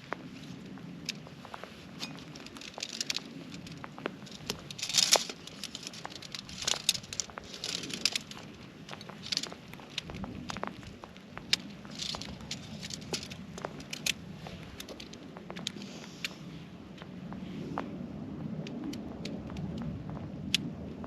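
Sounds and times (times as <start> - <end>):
tent fabric rustling and crinkling: 0.0 - 16.2.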